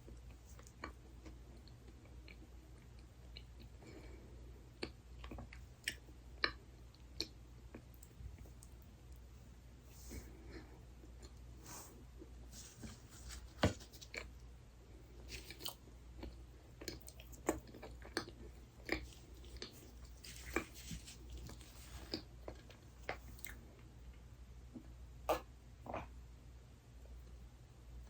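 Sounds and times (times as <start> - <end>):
person chewing: 15.3 - 23.6.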